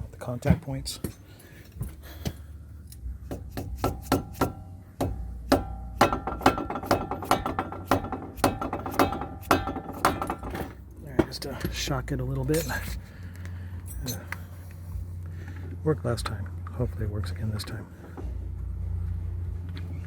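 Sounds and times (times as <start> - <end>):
hammer tapping metal tool: 3.3 - 11.4.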